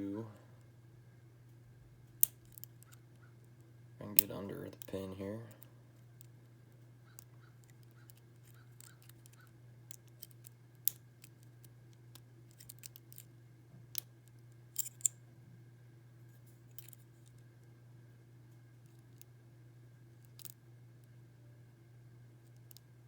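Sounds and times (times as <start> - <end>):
faint steady hum: 0.0 - 23.0
lock pick clicking and scraping: 7.2 - 11.5, 12.5 - 13.3, 14.8 - 15.2.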